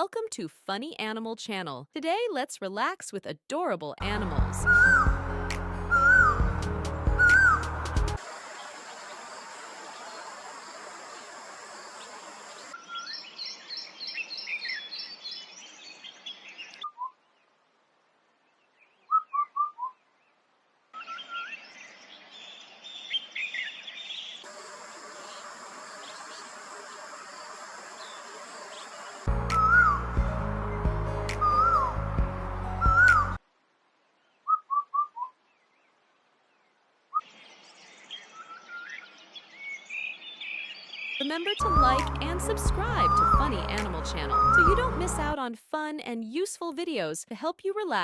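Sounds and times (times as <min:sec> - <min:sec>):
songbirds chirping: 0:04.0 - 0:33.4, 0:34.0 - 0:45.4
high insect-like hiss: 0:08.2 - 0:12.7, 0:24.4 - 0:29.8.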